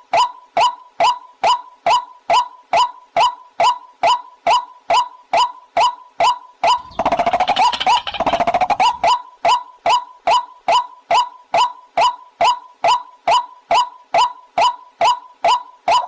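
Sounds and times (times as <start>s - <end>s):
fast chattering bird notes: 6.7s - 9.1s
waterhen calling: 6.7s - 9.2s.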